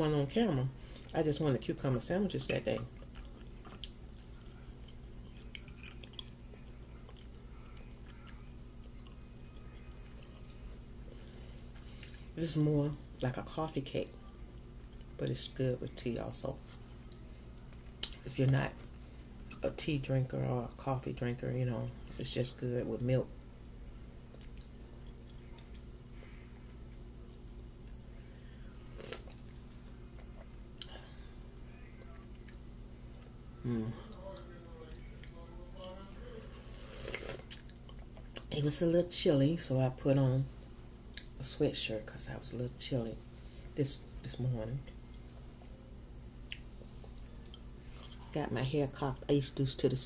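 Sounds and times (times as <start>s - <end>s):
faint low hum: 0.0s - 50.0s
chewing pastry: 2.7s - 10.9s, 24.2s - 31.0s, 31.7s - 33.4s, 34.0s - 38.5s, 46.4s - 48.4s.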